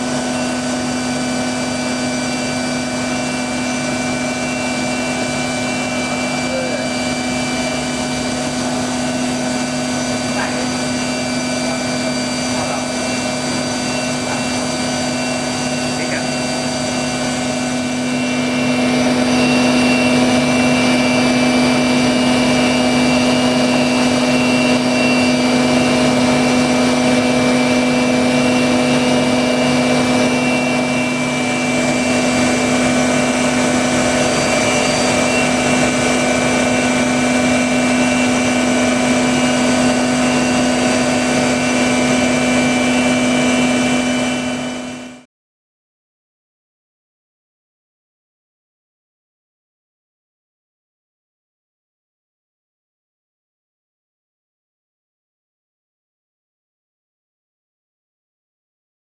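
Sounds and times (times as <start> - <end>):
milling machine spindle hum: 0.0 - 45.2
rushing machining noise: 0.0 - 45.2.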